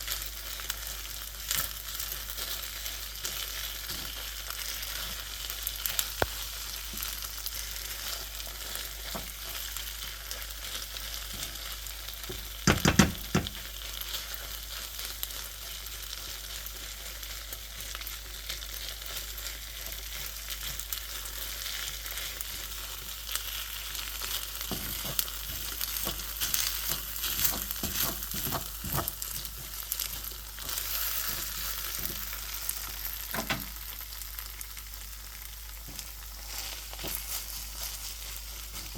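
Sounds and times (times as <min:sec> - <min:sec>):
rice sizzling in a pan: 0:00.0 - 0:38.9
utensil scraping and knocking pan: 0:12.6 - 0:13.6, 0:24.6 - 0:29.7.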